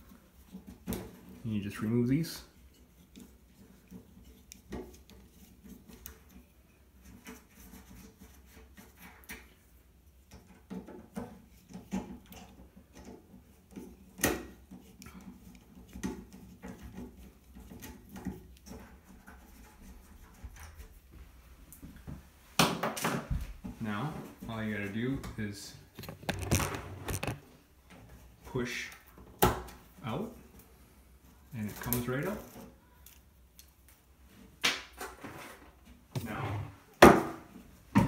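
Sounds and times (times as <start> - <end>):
screwdriver clicking and rubbing: 26.0 - 27.4.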